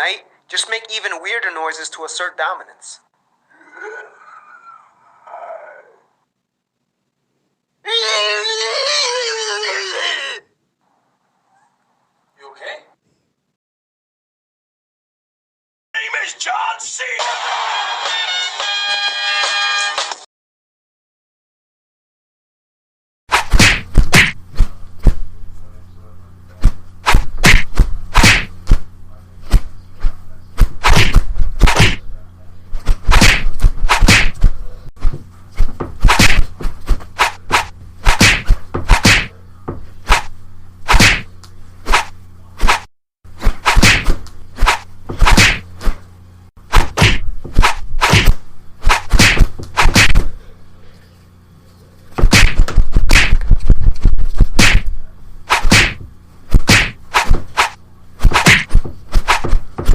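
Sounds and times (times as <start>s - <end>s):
sharp whacks: 23.3s - 25.2s, 26.6s - 28.8s, 30.6s - 32.0s, 32.8s - 34.5s, 35.9s - 39.3s, 40.0s - 40.3s, 40.9s - 41.3s, 41.9s - 46.0s, 46.7s - 50.3s, 52.2s - 53.6s, 54.4s - 54.9s, 55.5s - 59.9s
short noisy swishes: 23.3s - 25.2s, 26.6s - 28.8s, 29.4s - 32.0s, 32.7s - 39.4s, 40.0s - 46.1s, 46.7s - 50.3s, 52.2s - 54.9s, 55.5s - 59.9s
steady low hum: 23.4s - 59.9s.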